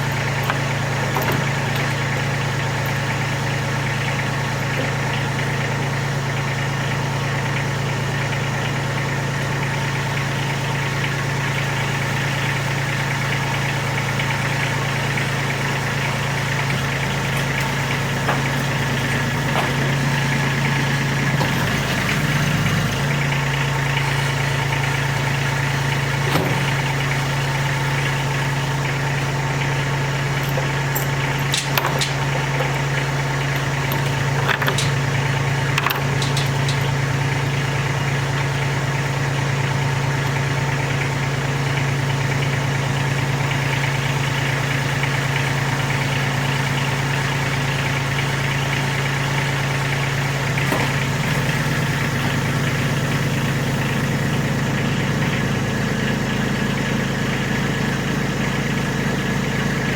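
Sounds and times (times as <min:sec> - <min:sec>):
tractor engine running: 0:00.0 - 0:59.9.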